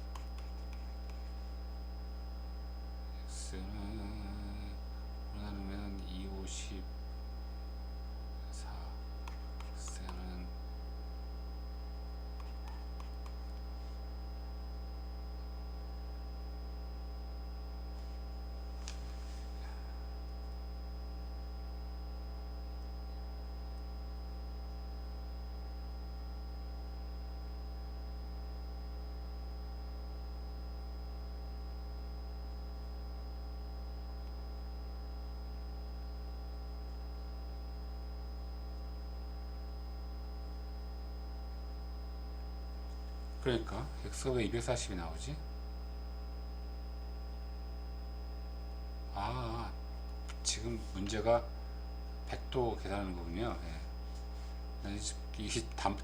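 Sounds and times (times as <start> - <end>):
electrical mains hum: 0.0 - 56.0
faint click: 50.1 - 51.2.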